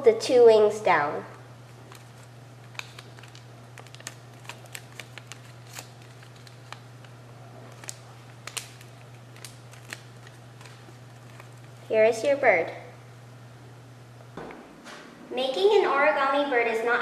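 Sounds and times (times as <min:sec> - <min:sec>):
steady low hum: 0:00.0 - 0:17.0
paper crinkling while folded: 0:01.7 - 0:11.9.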